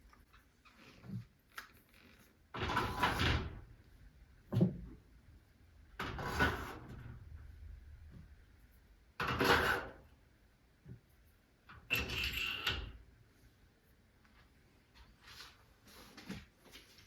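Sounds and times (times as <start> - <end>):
tools scraping and clattering: 11.8 - 13.0.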